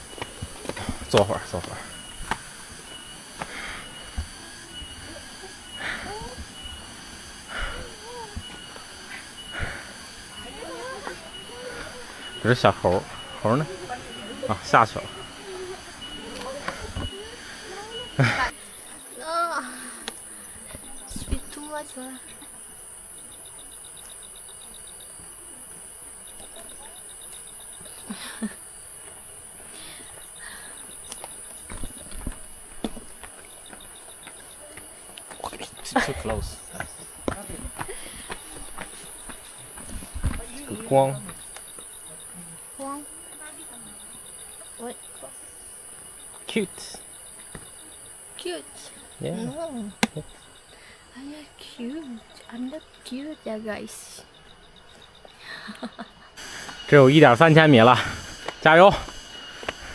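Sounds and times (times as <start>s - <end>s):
faint wavering high calls: 0.0s - 59.9s
insect chirping trill: 0.0s - 59.9s
insects droning: 0.0s - 59.9s
person breathing heavily: 3.4s - 4.1s, 5.8s - 12.3s.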